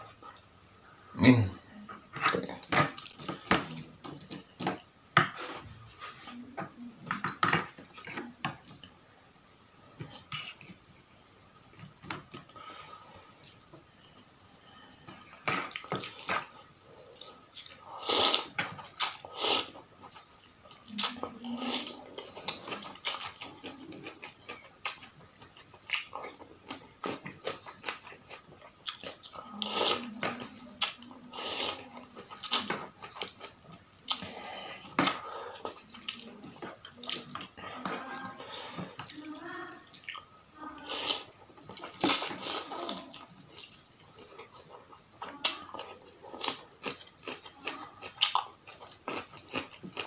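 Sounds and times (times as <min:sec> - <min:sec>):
slurping and chewing noodles: 0:14.7 - 0:50.0.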